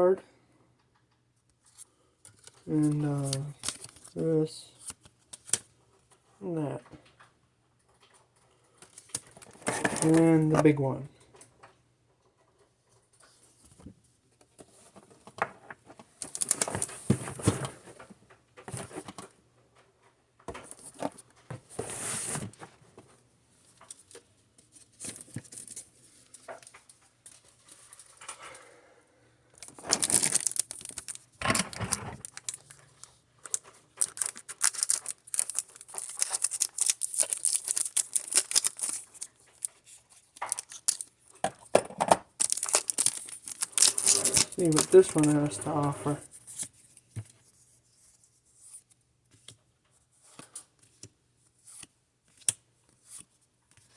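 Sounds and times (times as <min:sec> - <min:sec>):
packaging crinkling and tearing: 0:02.4 - 0:04.2, 0:16.2 - 0:17.1, 0:29.6 - 0:41.4, 0:42.3 - 0:46.2.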